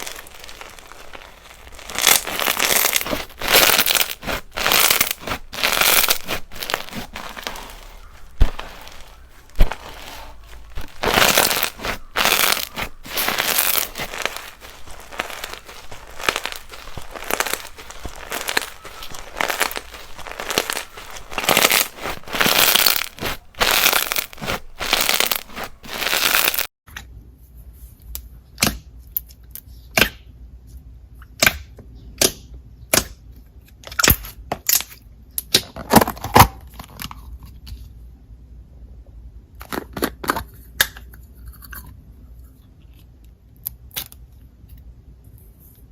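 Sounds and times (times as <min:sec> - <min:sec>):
slime crackling and crinkling: 0:00.0 - 0:26.7.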